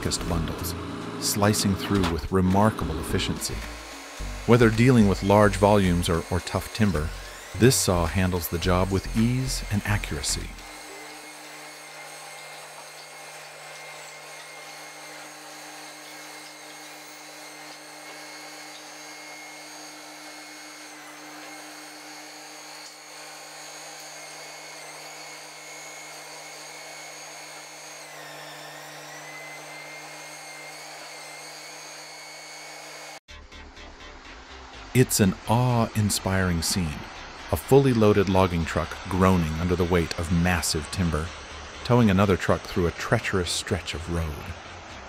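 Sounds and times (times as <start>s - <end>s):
low hum: 0.0s - 10.8s
saw high-pitched whine: 0.0s - 45.0s.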